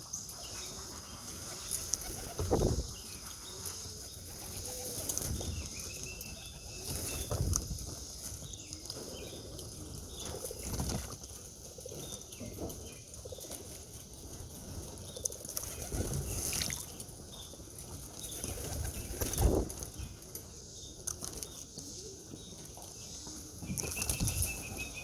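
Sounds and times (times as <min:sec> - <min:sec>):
pigeons flapping wings: 0:01.3 - 0:02.9, 0:04.0 - 0:08.1, 0:10.2 - 0:11.5, 0:13.5 - 0:16.6, 0:18.2 - 0:19.9.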